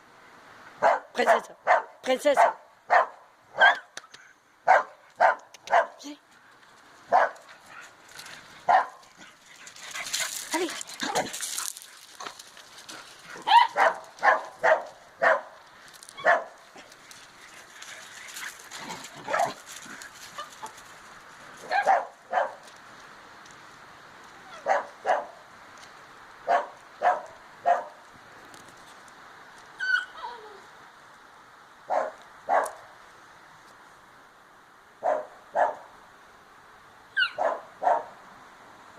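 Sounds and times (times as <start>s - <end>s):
dog barking: 0.8s - 3.9s, 4.7s - 6.0s, 7.1s - 7.4s, 8.7s - 9.0s, 13.4s - 15.5s, 16.2s - 16.5s, 21.7s - 22.6s, 24.6s - 25.4s, 26.5s - 28.0s, 31.9s - 32.8s, 35.0s - 35.9s, 37.2s - 38.2s.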